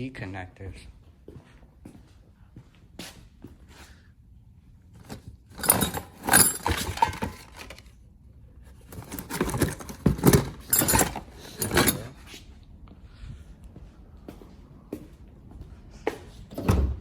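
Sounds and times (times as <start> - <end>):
small hard parts rattling: 5.0 - 8.0, 8.8 - 12.3.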